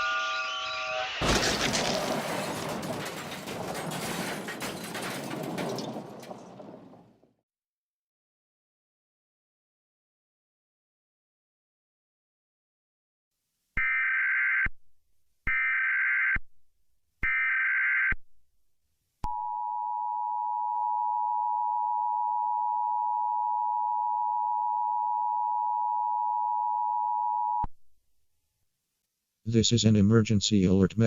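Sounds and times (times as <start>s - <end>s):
data tone bursts: 0.0s - 1.2s
two-tone attention signal: 0.0s - 1.2s.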